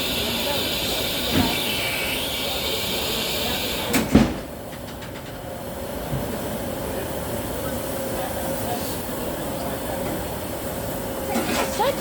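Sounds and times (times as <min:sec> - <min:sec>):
steam locomotive hissing: 0:00.0 - 0:04.2.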